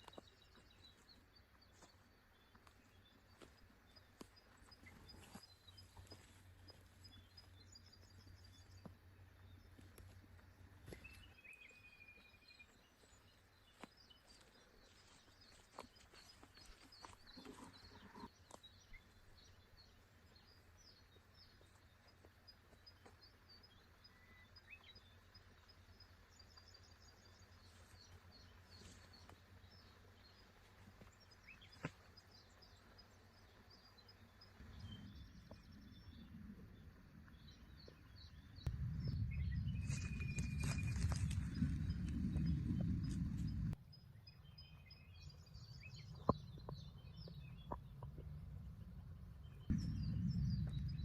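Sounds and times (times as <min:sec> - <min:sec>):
small birds chirping: 0:00.0 - 0:51.0
steady low rumble: 0:34.2 - 0:51.0
loud low rumble: 0:38.6 - 0:43.8, 0:47.8 - 0:51.0
low steady hum: 0:45.5 - 0:51.0.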